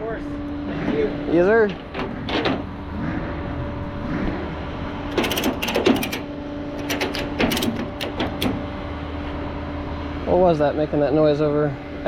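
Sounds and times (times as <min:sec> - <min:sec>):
steady low hum: 0:00.0 - 0:12.0
rapid mechanical clicks: 0:05.1 - 0:08.7.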